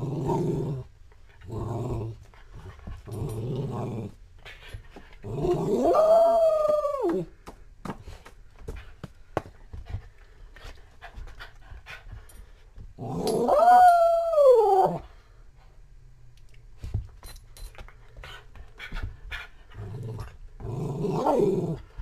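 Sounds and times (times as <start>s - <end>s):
dog howling whine: 5.4s - 7.3s, 13.2s - 15.0s.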